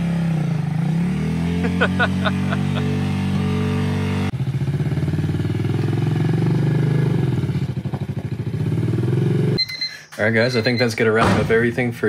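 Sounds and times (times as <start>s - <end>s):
rough pulsing engine: 0.0s - 9.6s.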